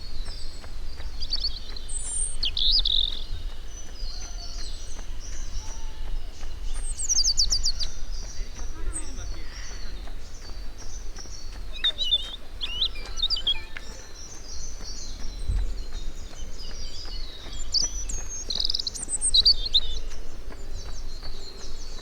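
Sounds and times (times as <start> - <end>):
bird trill: 0.0 - 22.0
songbirds chirping: 0.0 - 22.0
steady low rumble: 0.0 - 22.0.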